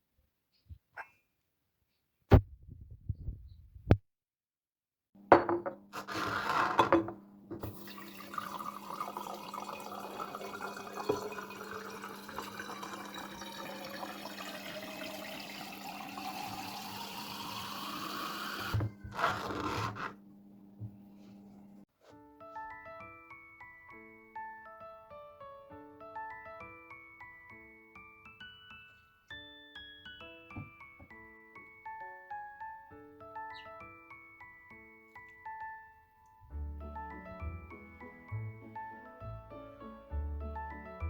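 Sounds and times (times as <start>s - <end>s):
household clatter: 5.3s - 8.0s, 18.6s - 20.2s
water running from a tap: 7.6s - 18.9s.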